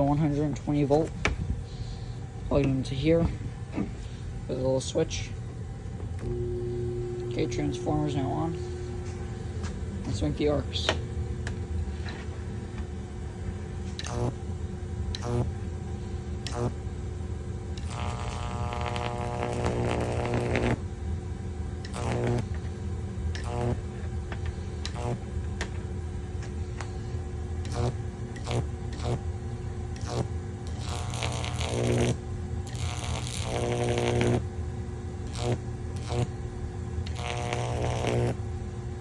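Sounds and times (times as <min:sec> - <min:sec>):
deep mains buzz: 0:00.0 - 0:39.0
electric arc crackling: 0:13.9 - 0:14.4, 0:15.1 - 0:15.6, 0:16.4 - 0:16.8, 0:17.7 - 0:20.8, 0:21.8 - 0:22.6, 0:23.3 - 0:24.0, 0:24.9 - 0:25.3, 0:27.6 - 0:29.3, 0:29.9 - 0:34.5, 0:35.2 - 0:36.4, 0:37.1 - 0:38.4.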